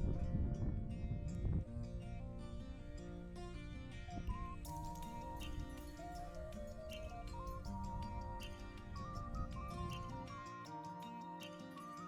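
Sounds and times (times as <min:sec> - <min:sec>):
gentle melody: 0:00.0 - 0:12.0
light ticking beat: 0:04.1 - 0:12.0.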